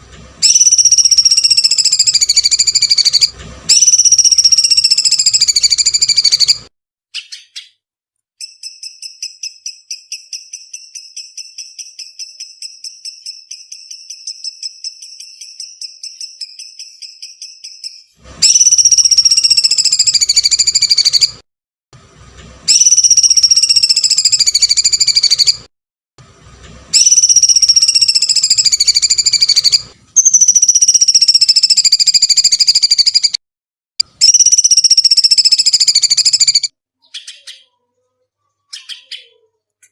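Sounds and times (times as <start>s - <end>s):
bird rattling trill: 0.4s - 6.6s, 8.4s - 21.4s, 22.7s - 25.6s, 26.9s - 33.3s, 34.2s - 36.7s
shrill scream-like bird calls: 0.4s - 7.8s, 8.4s - 21.4s, 22.7s - 25.7s, 26.9s - 33.4s, 34.2s - 37.9s, 38.5s - 39.5s.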